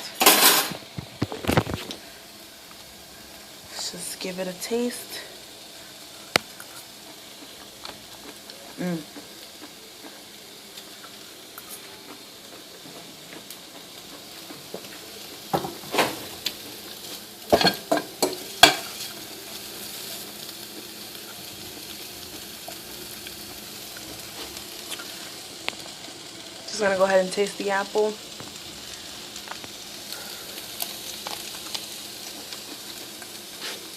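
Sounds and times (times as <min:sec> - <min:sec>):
food sizzling in a hot pan: 0:00.0 - 0:33.9
utensil clattering on pan: 0:17.5 - 0:19.0.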